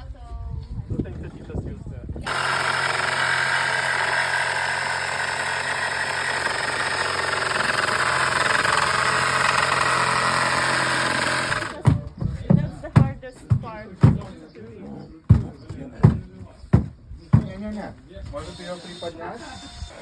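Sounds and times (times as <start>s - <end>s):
engine running steadily: 2.2s - 11.8s.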